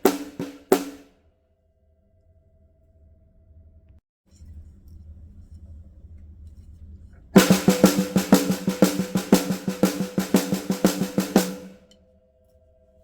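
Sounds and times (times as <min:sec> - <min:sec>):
drum strokes with pitched ring: 0:00.0 - 0:01.0, 0:07.4 - 0:11.8.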